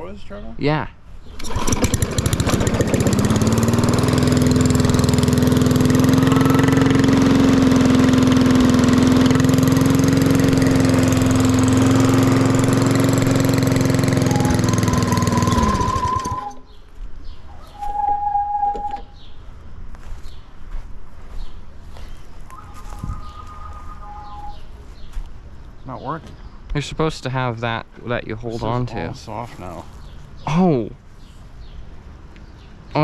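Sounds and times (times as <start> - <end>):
small lawn mower engine running: 1.3 - 16.6.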